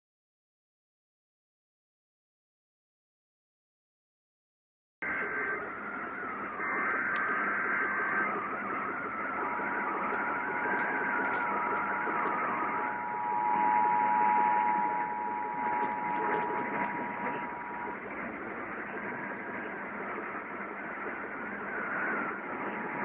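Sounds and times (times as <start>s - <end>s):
header data tones: 5.0s - 23.0s
radio static hiss: 5.0s - 23.0s
wavering whistle: 5.0s - 23.0s
two-tone attention signal: 10.0s - 18.9s.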